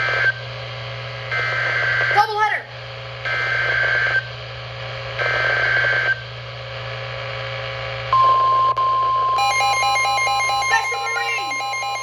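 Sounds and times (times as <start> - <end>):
steady warning alarm tone: 8.1 - 12.0
beeping tones: 8.2 - 12.0.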